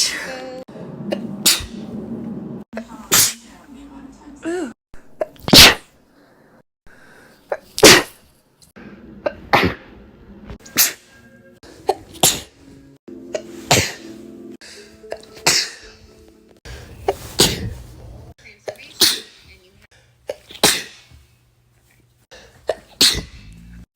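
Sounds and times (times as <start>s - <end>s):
person sneezing: 1.1s - 1.8s, 3.1s - 3.4s, 4.5s - 5.9s, 7.5s - 8.2s, 9.2s - 9.9s, 11.8s - 12.6s, 13.3s - 14.2s, 15.4s - 16.0s, 17.0s - 17.9s, 18.7s - 19.5s, 20.3s - 21.2s, 22.4s - 23.5s.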